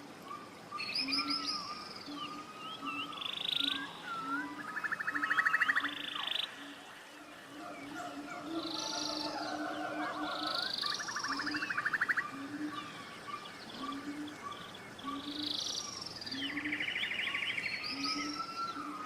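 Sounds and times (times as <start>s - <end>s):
rapid rattling bird trill: 7.4s - 19.0s.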